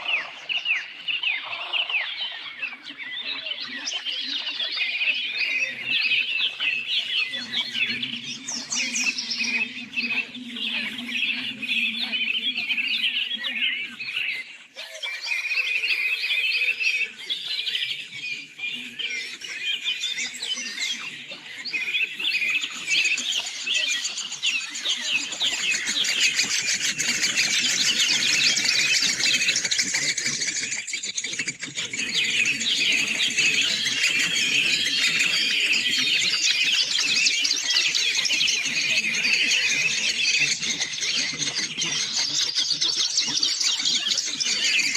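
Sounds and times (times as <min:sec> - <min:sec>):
songbirds chirping and trilling: 0:00.0 - 0:44.9.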